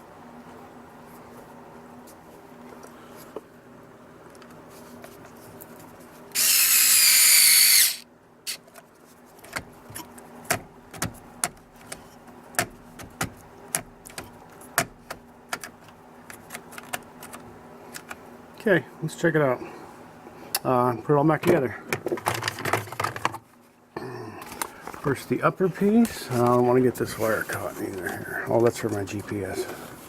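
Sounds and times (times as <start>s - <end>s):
power screwdriver whirring: 6.4s - 8.6s.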